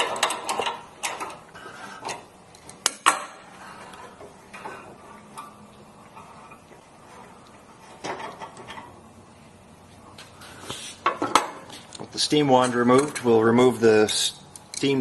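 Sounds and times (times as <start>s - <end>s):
metal clicking and clinking: 0.0s - 1.4s.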